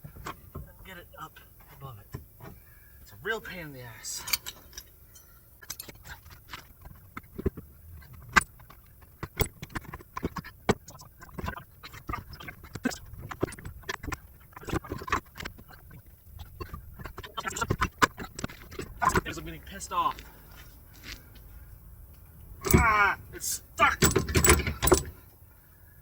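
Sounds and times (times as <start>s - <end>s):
metal clunks and scrapes: 24.0s - 25.2s.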